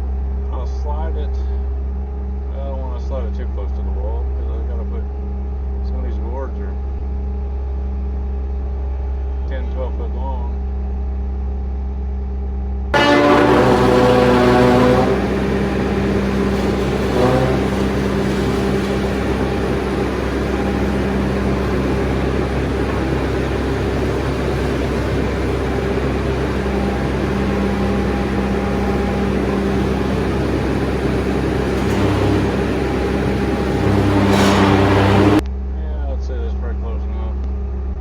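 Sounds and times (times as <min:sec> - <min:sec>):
diesel engine running: 0:13.0 - 0:35.4.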